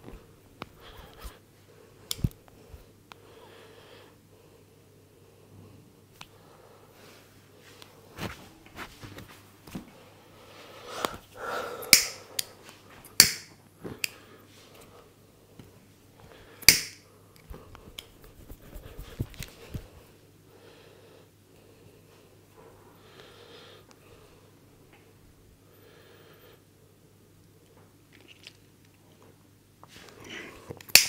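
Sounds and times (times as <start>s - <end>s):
soft taps and rubbing on head: 17.8s - 19.9s.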